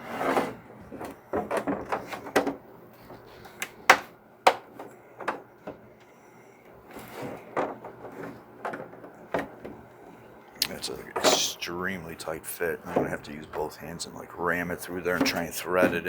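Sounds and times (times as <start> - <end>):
plastic clicks and knocks: 0.9 - 6.1, 6.9 - 9.8.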